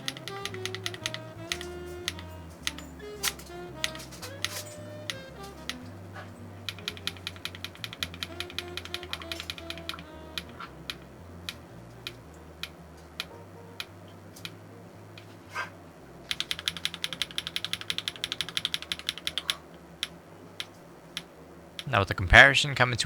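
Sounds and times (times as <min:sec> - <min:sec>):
mechanical keyboard keystrokes: 0:00.0 - 0:05.9, 0:06.6 - 0:14.6, 0:16.3 - 0:19.6
soft background music: 0:00.0 - 0:21.9.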